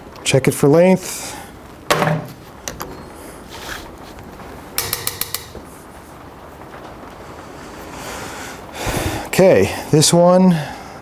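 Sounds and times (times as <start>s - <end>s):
sharp metallic clicks: 4.8s - 5.6s.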